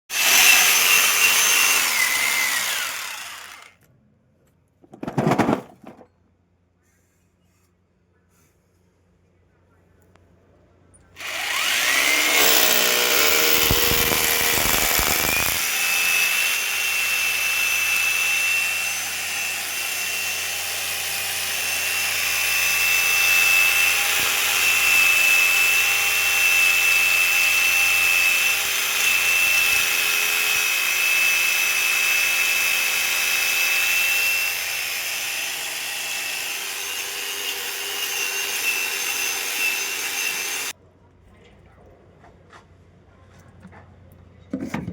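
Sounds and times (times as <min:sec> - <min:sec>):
electric power drill whining: 0:00.1 - 0:03.8, 0:11.2 - 0:40.8.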